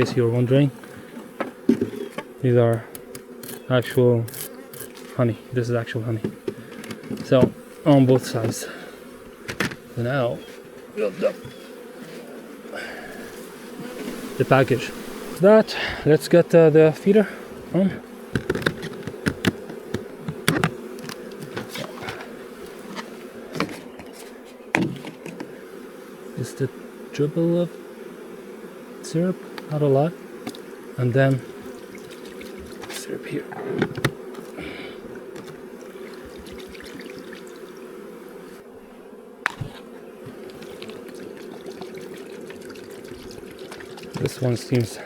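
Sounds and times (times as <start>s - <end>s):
honeybees buzzing: 0.0s - 45.0s
knocks and clicks of hive: 0.8s - 5.2s, 6.1s - 12.0s, 18.2s - 25.6s, 29.4s - 38.2s, 39.4s - 45.0s.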